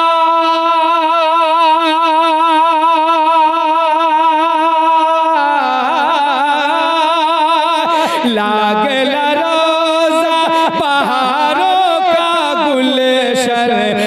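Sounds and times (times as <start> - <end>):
person singing long note with vibrato: 0.0 - 14.0.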